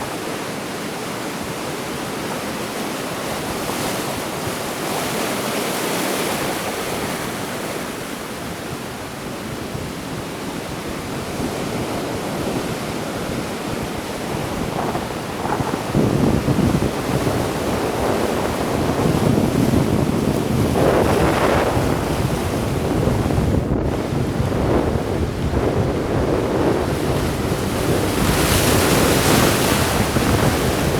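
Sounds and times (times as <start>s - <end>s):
sea waves breaking on shore: 0.0s - 30.9s
wind buffeting microphone: 6.3s - 30.9s.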